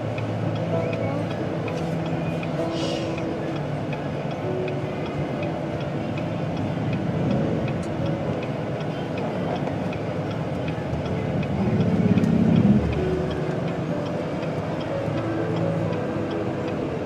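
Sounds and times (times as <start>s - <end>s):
light regular ticking: 0.0s - 17.0s
road and engine noise inside car: 0.0s - 17.0s.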